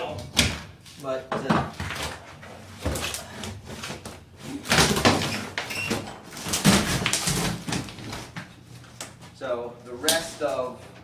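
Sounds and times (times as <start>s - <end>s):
tiled floor being broken up: 4.6s - 8.3s.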